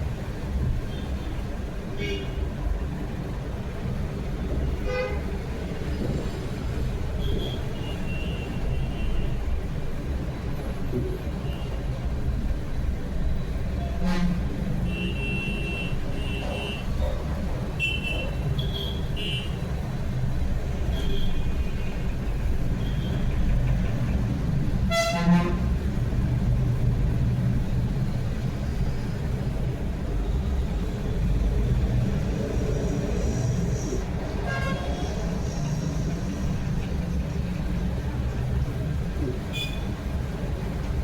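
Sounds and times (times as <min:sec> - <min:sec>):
road traffic rumble: 0:00.0 - 0:41.0
loud horn blast: 0:14.0 - 0:14.5, 0:24.9 - 0:25.7, 0:34.4 - 0:35.2.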